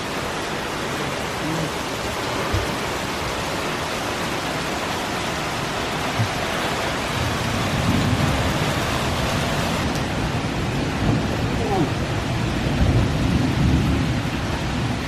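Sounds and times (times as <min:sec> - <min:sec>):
heavy rain pouring: 0:00.0 - 0:15.0
low rumble of thunder: 0:07.0 - 0:09.4, 0:10.1 - 0:15.0.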